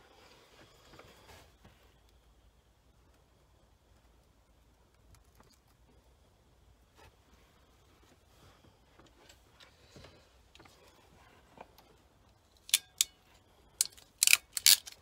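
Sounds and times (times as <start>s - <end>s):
sharp plastic clicks and snaps: 13.8s - 15.0s.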